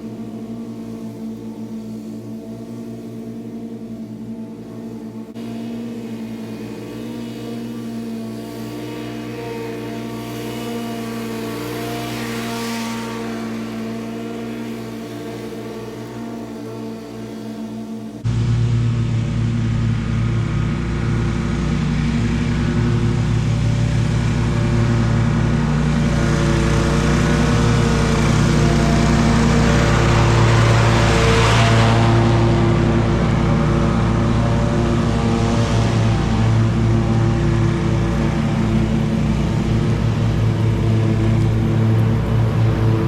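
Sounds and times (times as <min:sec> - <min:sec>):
lawn mower engine running: 0:18.2 - 0:43.0.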